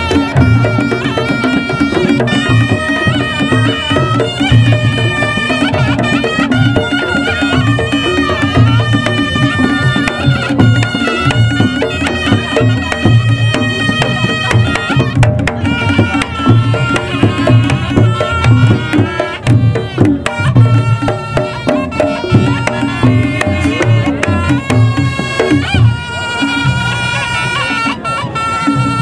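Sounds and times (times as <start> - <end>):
hand drums beating: 0.0 - 29.0
reedy shawm melody: 0.0 - 29.0.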